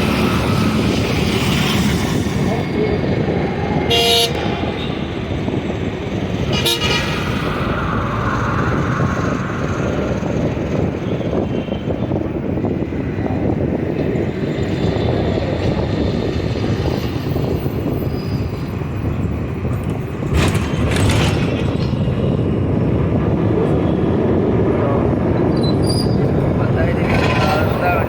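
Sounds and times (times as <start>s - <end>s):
road traffic rumble: 0.0s - 28.0s.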